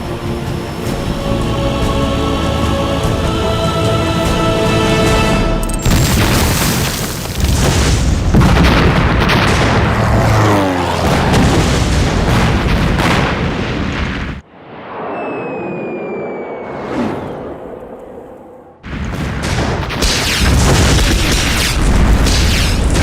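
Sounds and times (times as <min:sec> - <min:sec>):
orchestral film score: 0:00.0 - 0:06.0
explosions rumbling: 0:05.8 - 0:23.0
downward sliding tone: 0:14.5 - 0:18.8.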